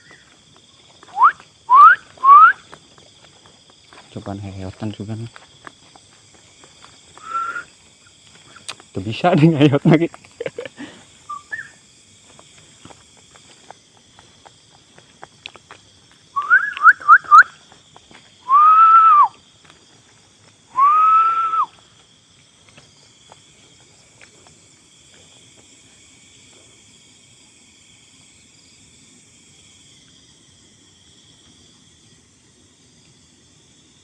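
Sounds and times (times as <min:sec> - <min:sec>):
night insects chorus: 0:00.0 - 0:34.0
person whistling loudly: 0:01.1 - 0:02.6, 0:07.2 - 0:07.7, 0:16.4 - 0:17.6, 0:18.4 - 0:19.4, 0:20.7 - 0:21.8.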